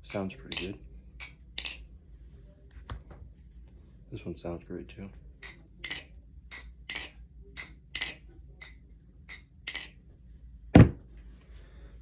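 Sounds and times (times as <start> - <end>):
heavy thump: 10.8 - 11.1.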